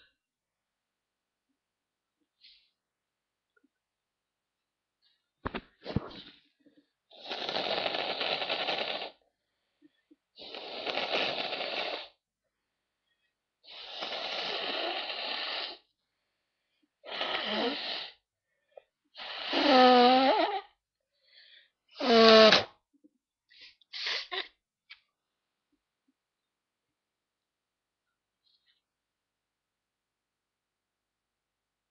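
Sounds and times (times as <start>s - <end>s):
person blowing nose: 7.1s - 9.2s, 10.4s - 12.2s, 13.7s - 15.9s, 17.0s - 18.2s, 19.2s - 20.7s, 22.0s - 22.8s
person sneezing: 23.9s - 24.6s.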